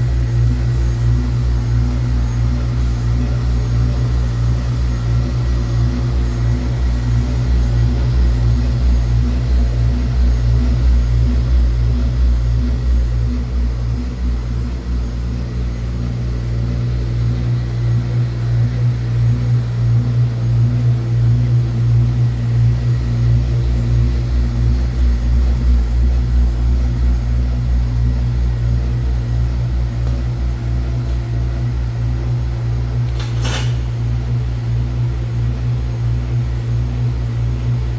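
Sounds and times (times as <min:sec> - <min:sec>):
washing machine motor hum: 0:00.0 - 0:37.9.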